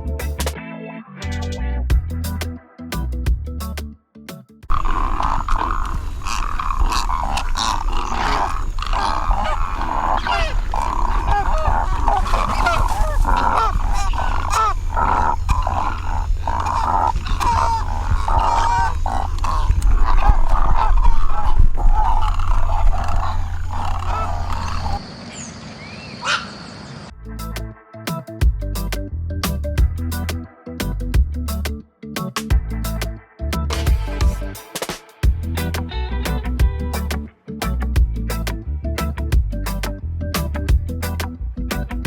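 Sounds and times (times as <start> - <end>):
low rumble: 4.7 - 25.0, 35.3 - 42.0
chorus of animal calls: 4.7 - 27.1.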